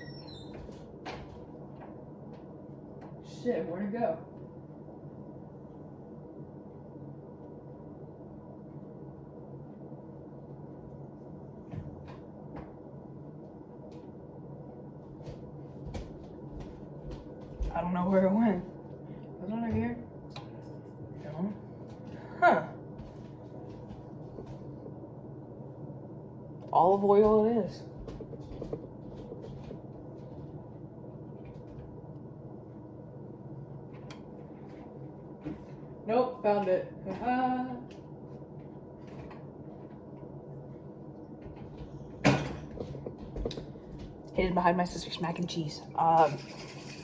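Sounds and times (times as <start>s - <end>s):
steady low hum: 0.0s - 47.0s
cupboard door and items clattering: 41.4s - 44.1s.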